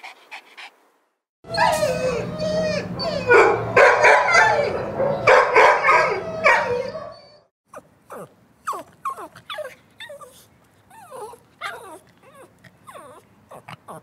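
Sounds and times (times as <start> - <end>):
dog whimpering: 1.5 - 3.3, 6.0 - 14.0
dog barking: 3.3 - 6.9.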